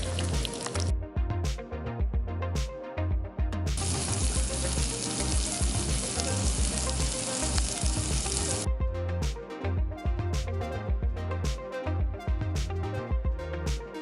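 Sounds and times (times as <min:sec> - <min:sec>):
background music with steady beat: 0:00.0 - 0:14.0
food sizzling in frying pan: 0:03.8 - 0:08.7.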